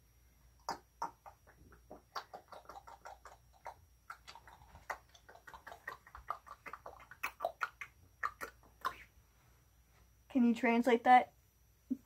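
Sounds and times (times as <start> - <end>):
person making mouth clicks: 0.6 - 9.1.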